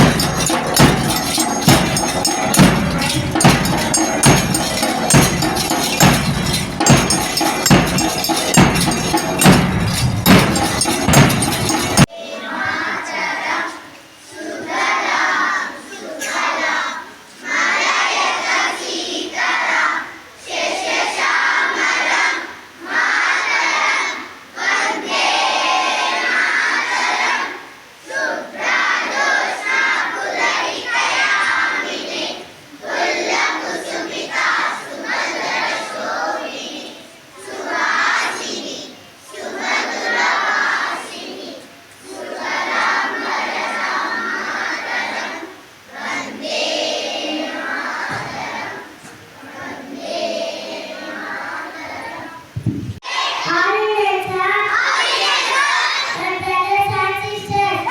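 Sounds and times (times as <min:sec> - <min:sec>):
children chanting in unison: 0:12.1 - 0:57.9.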